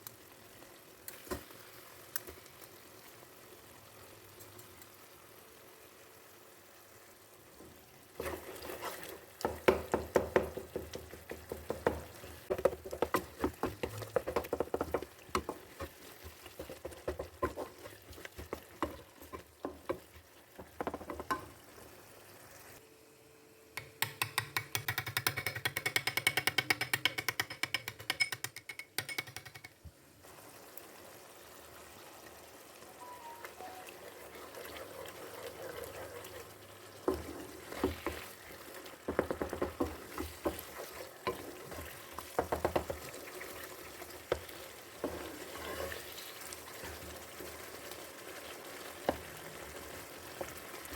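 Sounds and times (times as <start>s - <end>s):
spoon scraping a cooking pot: 11.7s - 20.1s, 34.0s - 38.3s, 39.1s - 43.6s, 44.3s - 47.0s.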